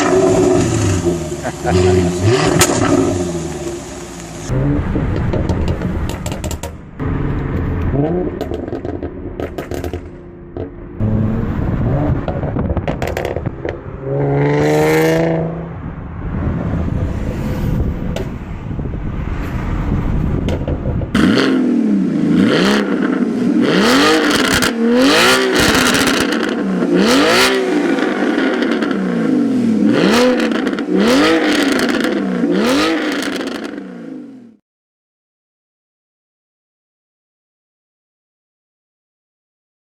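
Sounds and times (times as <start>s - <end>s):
exhaust crackles and pops: 0.0s - 14.1s, 20.3s - 21.6s, 24.1s - 33.8s
car engine revving: 0.0s - 34.6s.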